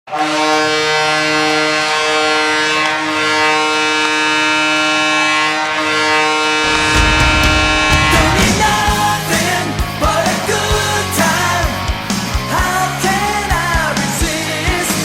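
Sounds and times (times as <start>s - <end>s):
rock music: 6.6s - 15.0s.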